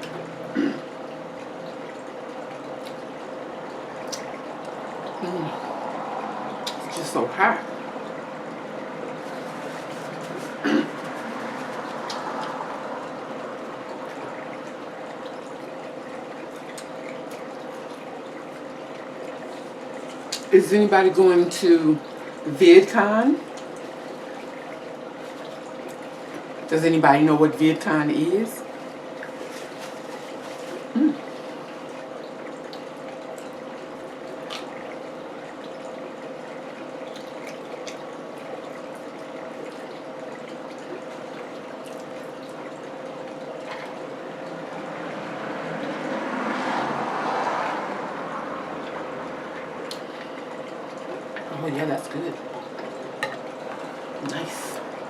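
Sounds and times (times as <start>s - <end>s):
faint continuous hum: 0.0s - 55.0s
person humming mm: 5.2s - 5.7s, 30.9s - 31.2s.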